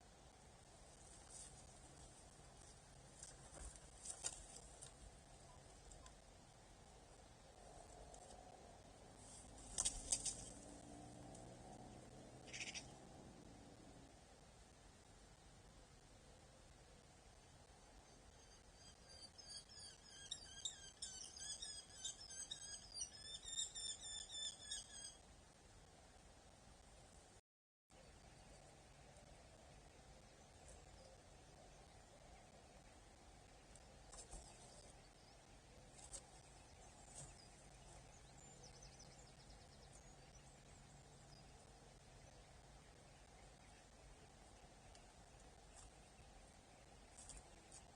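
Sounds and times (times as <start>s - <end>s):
faint steady hiss: 0.0s - 20.1s, 28.0s - 47.9s
quick run of ticks: 9.6s - 10.7s
bird chattering: 12.4s - 12.9s
high bird chirps: 18.4s - 25.2s
steady low hum: 28.0s - 47.9s.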